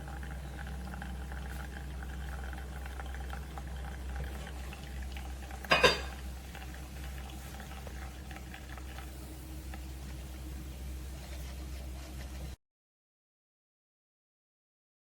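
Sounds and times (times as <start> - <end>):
espresso machine humming: 0.0 - 11.8
water boiling and gurgling: 0.0 - 12.5.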